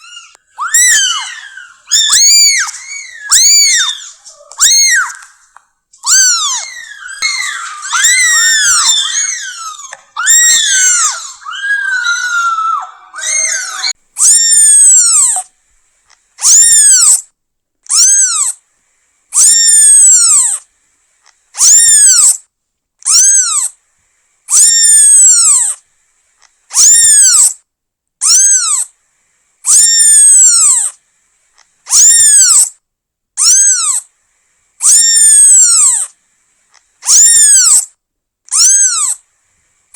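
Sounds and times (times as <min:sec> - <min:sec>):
kitten meowing: 0:00.0 - 0:15.5, 0:16.4 - 0:17.2, 0:17.9 - 0:18.6, 0:19.4 - 0:20.6, 0:21.6 - 0:22.4, 0:23.1 - 0:23.7, 0:26.8 - 0:27.6, 0:28.2 - 0:28.9, 0:29.7 - 0:30.9, 0:31.9 - 0:32.7, 0:33.4 - 0:34.0, 0:34.8 - 0:36.1, 0:37.0 - 0:37.9, 0:38.5 - 0:39.2.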